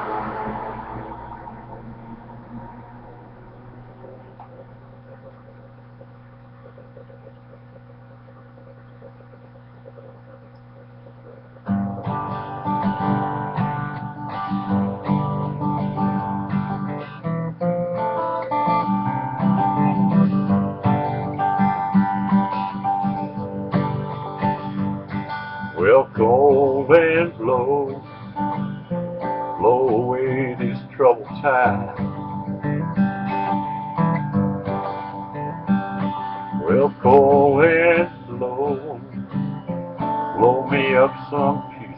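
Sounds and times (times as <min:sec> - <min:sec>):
acoustic guitar playing: 0:00.0 - 0:41.9
faint steady hum: 0:00.0 - 0:41.9
person singing: 0:25.8 - 0:28.1, 0:29.6 - 0:32.2, 0:36.6 - 0:39.2, 0:40.3 - 0:41.9.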